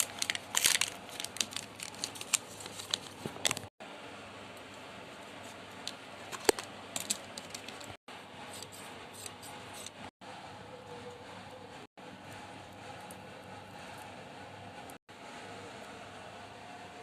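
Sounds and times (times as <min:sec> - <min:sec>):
packaging being handled: 0:00.0 - 0:03.7, 0:06.3 - 0:08.0.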